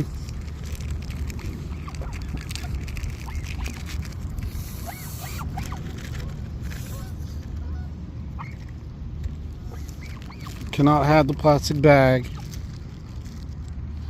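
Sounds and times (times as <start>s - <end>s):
low rumble: 0.0s - 10.8s, 11.6s - 14.0s
geese calling: 4.5s - 8.8s, 9.5s - 10.7s
gulls calling: 4.8s - 10.7s.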